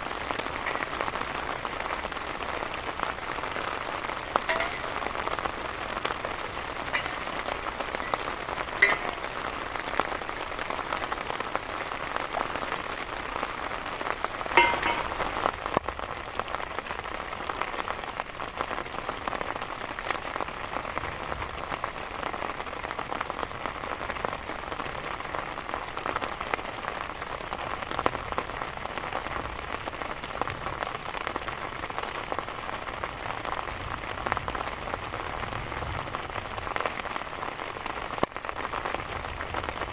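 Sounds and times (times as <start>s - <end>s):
heavy rain falling: 0.0s - 39.9s
sharp impacts: 14.6s - 15.4s.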